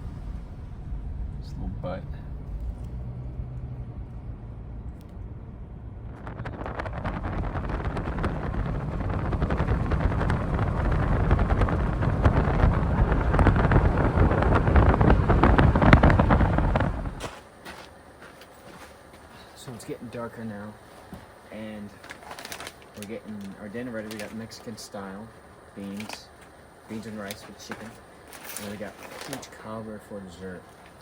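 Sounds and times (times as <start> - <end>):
wind buffeting microphone: 4.2 - 17.3.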